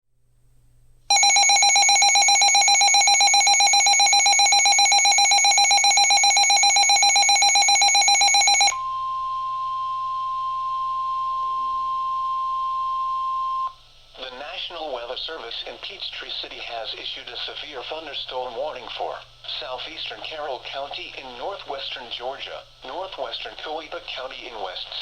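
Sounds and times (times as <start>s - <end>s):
rapidly pulsing alarm beeps: 1.1s - 8.8s
steady alarm tone: 1.1s - 13.7s.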